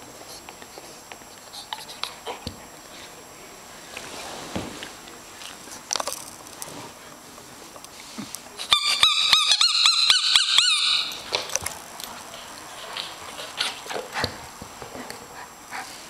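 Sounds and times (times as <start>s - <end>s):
squeaky dog ball squeaking: 8.7s - 11.3s.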